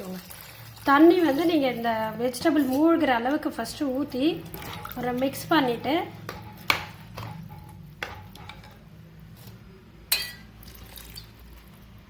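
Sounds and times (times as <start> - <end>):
spoon stirring vegetables in water: 0.0 - 11.9
spoon clinking against metal pot: 10.1 - 10.5.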